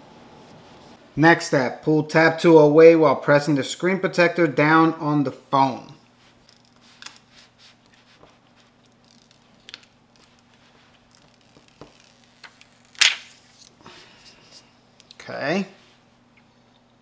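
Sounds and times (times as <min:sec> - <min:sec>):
sharp plastic crackle: 0:08.7 - 0:13.8.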